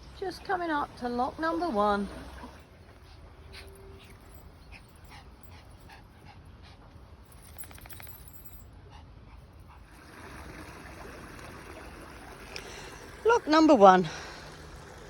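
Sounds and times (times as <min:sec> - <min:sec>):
rushing water: 0:00.0 - 0:02.8, 0:09.9 - 0:15.0.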